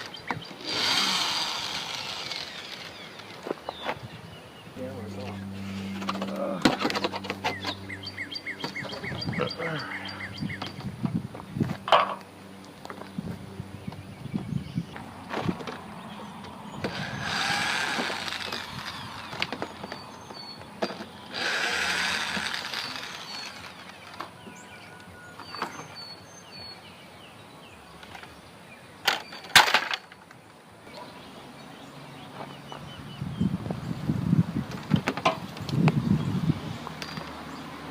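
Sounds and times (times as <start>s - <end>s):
power tool bursts: 0.6s - 3.4s, 16.8s - 19.6s, 21.3s - 24.1s.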